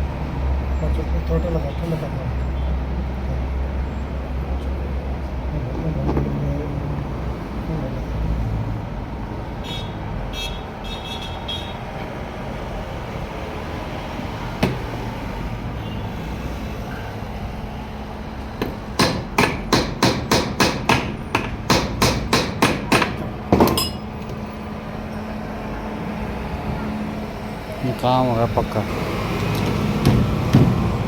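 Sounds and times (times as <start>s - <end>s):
hammer striking metal: 18.6s - 24.1s.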